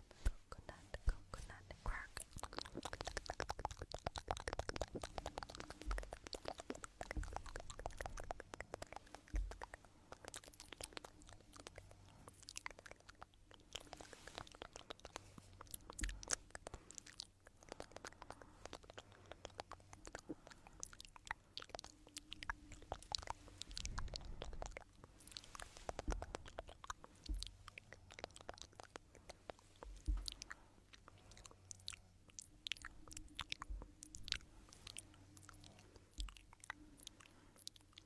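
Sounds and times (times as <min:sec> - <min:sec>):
soft low thumps: 0:00.1 - 0:09.8, 0:29.8 - 0:30.6.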